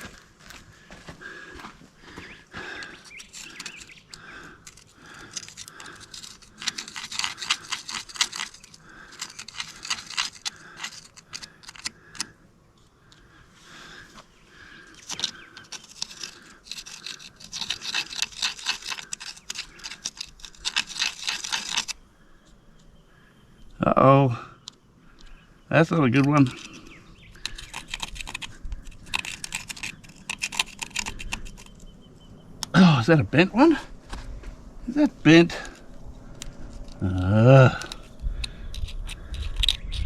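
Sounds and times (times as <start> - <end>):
hand tool scraping dirt: 2.6 - 12.4, 14.8 - 22.0, 25.7 - 31.9, 32.6 - 40.0.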